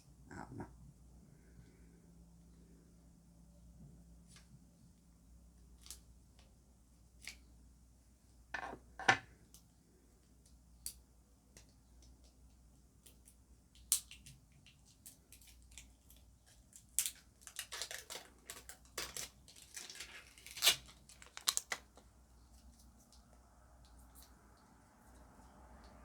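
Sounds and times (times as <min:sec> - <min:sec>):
packaging rustling and snapping: 0:17.0 - 0:22.0.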